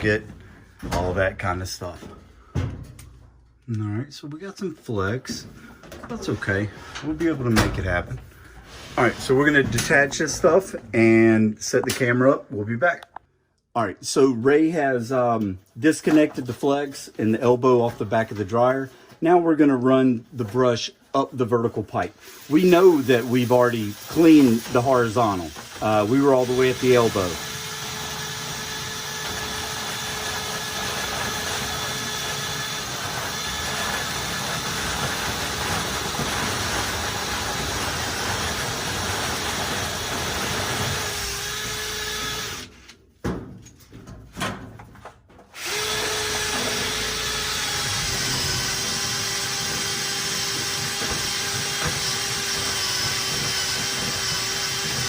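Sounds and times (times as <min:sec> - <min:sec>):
power drill spinning brush: 0:21.5 - 0:43.0, 0:45.5 - 0:55.0.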